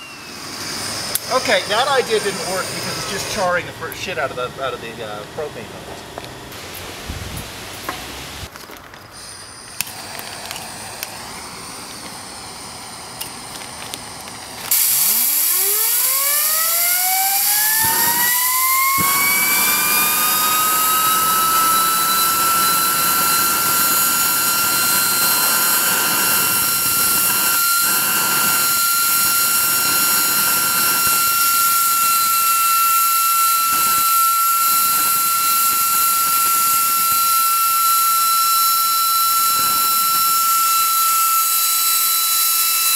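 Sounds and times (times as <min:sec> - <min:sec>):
loud rush of air: 0:00.0 - 0:03.9, 0:06.4 - 0:08.5
turbo whine rising: 0:00.0 - 0:08.5, 0:09.1 - 0:42.9.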